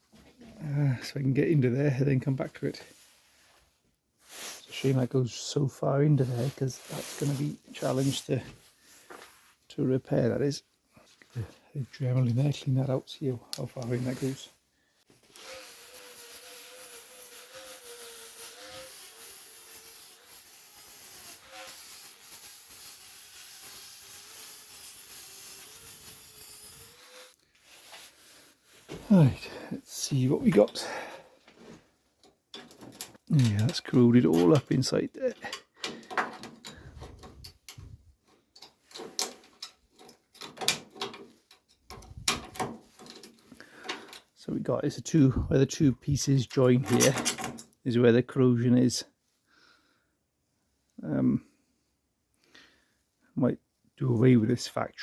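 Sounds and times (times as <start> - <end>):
rotary tool whining on metal: 15.3 - 27.4.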